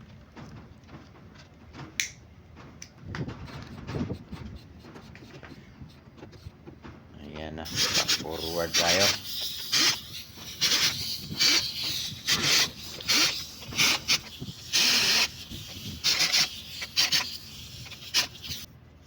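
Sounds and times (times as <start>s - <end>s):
scraping hissing bursts: 7.6s - 18.7s.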